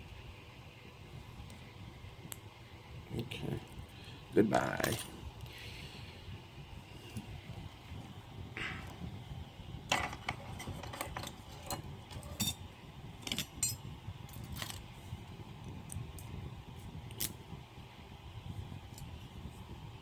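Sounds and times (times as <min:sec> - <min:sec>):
metal lock parts clicking: 0:09.9 - 0:12.6, 0:13.2 - 0:14.8.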